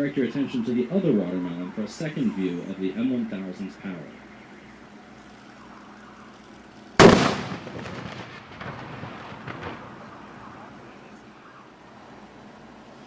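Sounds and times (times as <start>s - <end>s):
sharp explosion echoing: 7.0s - 10.2s.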